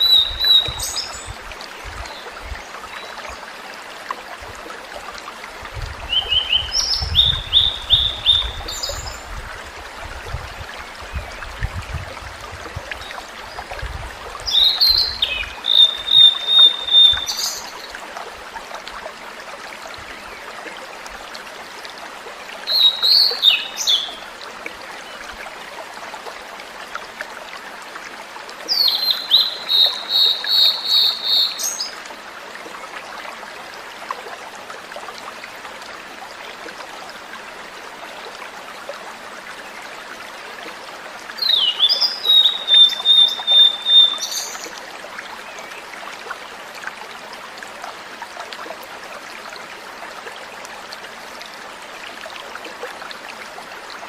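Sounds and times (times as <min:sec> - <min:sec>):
trickle of running water: 0:00.0 - 0:54.0
bird singing flute-like whistles: 0:15.7 - 0:17.4, 0:41.6 - 0:44.4.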